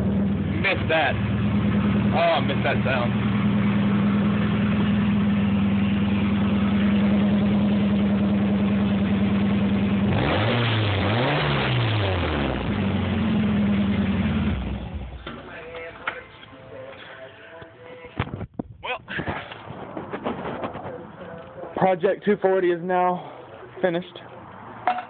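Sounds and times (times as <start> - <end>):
car engine idling and revving: 0.0 - 15.6.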